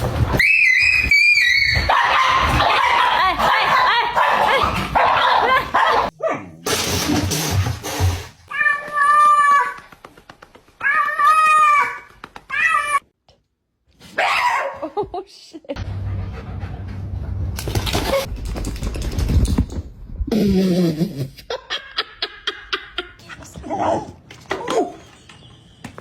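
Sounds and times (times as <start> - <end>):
dog barking: 1.9 - 6.6, 14.2 - 14.8.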